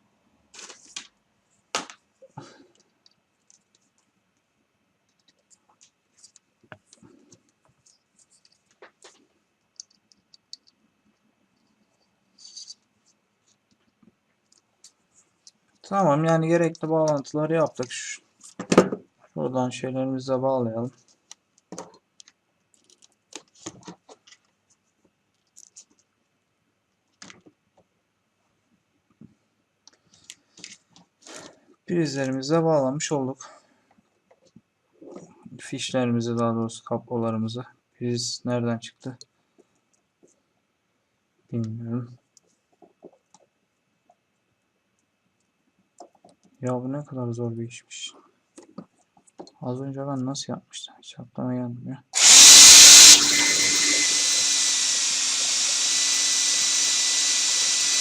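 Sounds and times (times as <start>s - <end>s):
cables being handled clicking: 2.7s - 12.9s, 13.5s - 18.6s, 21.2s - 24.5s, 25.3s - 26.1s
cables clicking and rattling: 21.3s - 24.5s.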